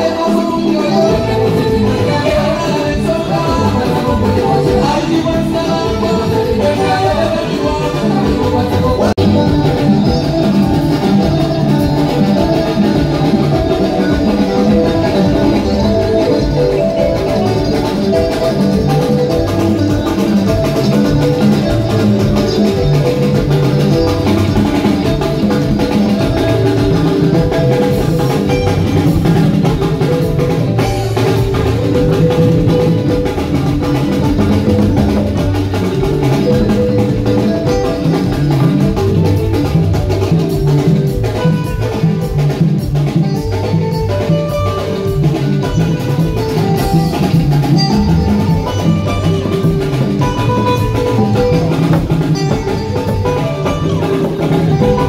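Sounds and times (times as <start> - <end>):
drum kit steady beat: 0.0 - 55.0
live band playing: 0.0 - 55.0.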